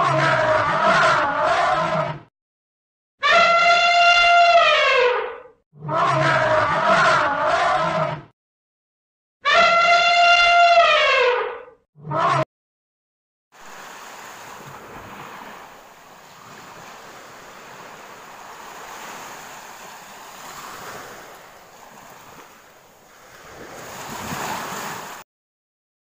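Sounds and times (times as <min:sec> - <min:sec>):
waves washing on shore: 0:13.6 - 0:25.2.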